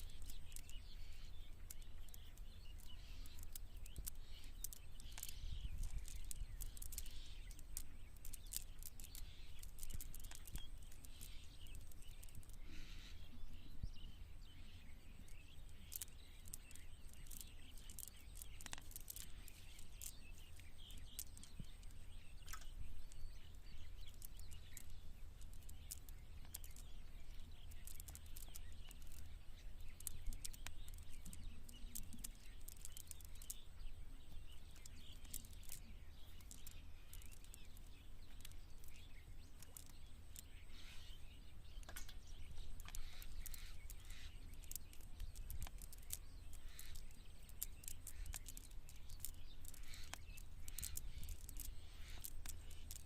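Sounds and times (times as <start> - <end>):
sharp clicks: 0.0 - 12.6, 15.3 - 33.7, 34.3 - 53.0
faint bird chirps: 0.0 - 53.0.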